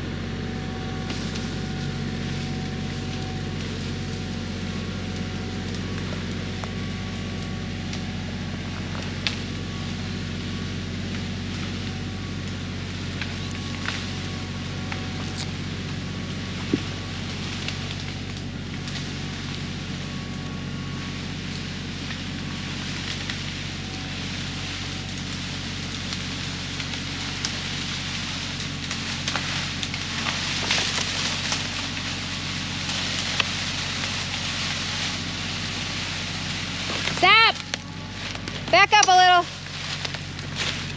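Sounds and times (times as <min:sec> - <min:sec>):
engine idling: 0:00.0 - 0:40.9
crackling and small snaps: 0:25.0 - 0:35.2.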